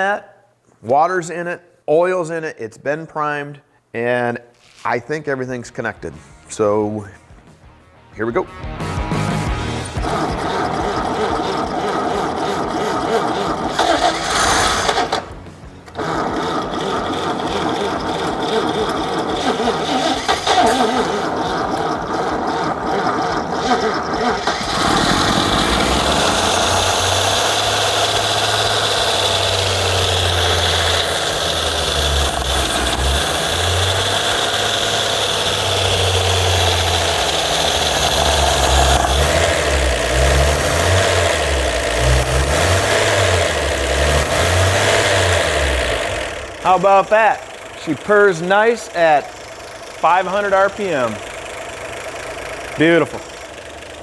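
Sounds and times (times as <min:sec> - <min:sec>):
engine idling: 0:09.3 - 0:54.0
starter cranking: 0:09.9 - 0:46.8.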